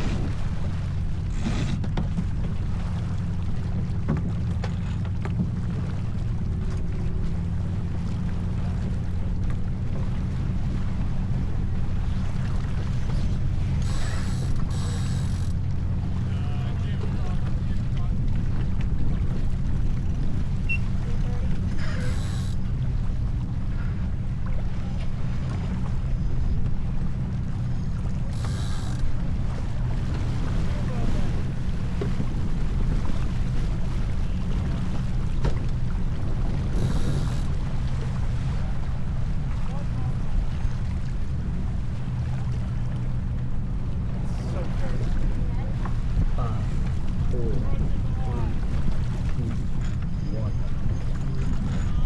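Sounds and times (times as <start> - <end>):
water rushing along a boat: 0.0 - 52.0
wind buffeting microphone: 0.0 - 52.0
faint clicks and knocks: 13.8 - 15.8, 28.3 - 29.3.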